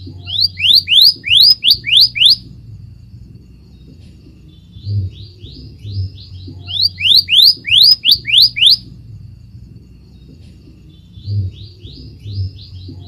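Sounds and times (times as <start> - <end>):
bird rising whistles: 0.3 - 2.4, 6.7 - 8.8.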